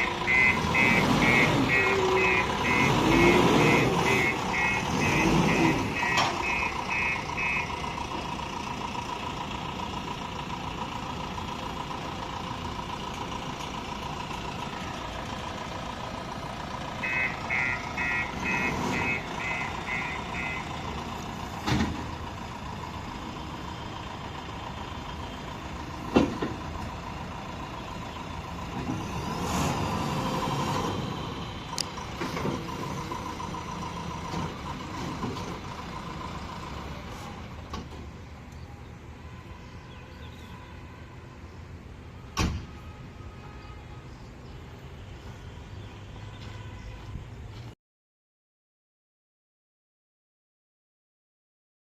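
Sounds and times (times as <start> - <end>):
reversing alarm beeping: 0.0 - 7.8, 17.0 - 20.8
engine running: 0.0 - 38.8.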